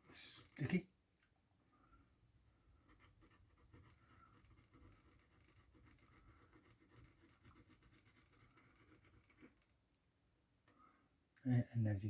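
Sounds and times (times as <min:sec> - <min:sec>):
faint tool scratching: 0:02.8 - 0:09.7.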